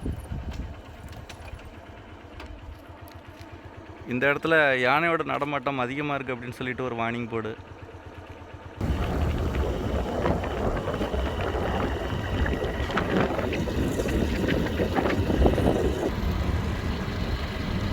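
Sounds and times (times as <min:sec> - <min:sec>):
wind buffeting microphone: 0:00.0 - 0:01.5, 0:08.8 - 0:17.9
moving vehicle rumble: 0:08.4 - 0:17.9.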